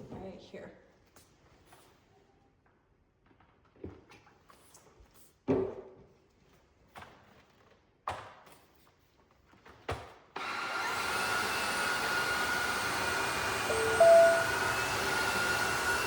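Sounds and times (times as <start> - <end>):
vacuum cleaner motor whining: 10.4 - 16.0.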